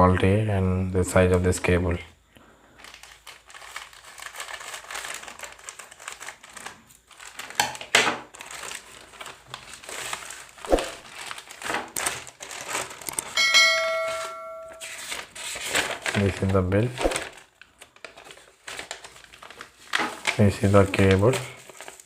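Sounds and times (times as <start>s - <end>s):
packaging crinkling and rustling: 2.7s - 13.4s, 14.8s - 22.0s
packaging ripping: 2.8s - 13.4s, 14.8s - 22.0s
short bell-like ring: 13.4s - 15.0s.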